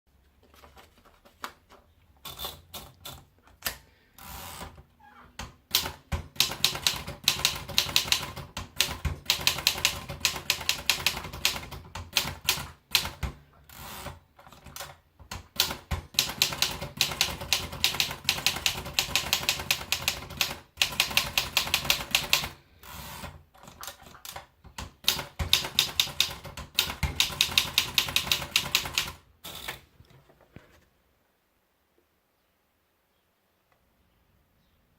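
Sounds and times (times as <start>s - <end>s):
manual typewriter key strikes: 5.7s - 13.4s, 14.5s - 22.5s, 23.6s - 29.2s.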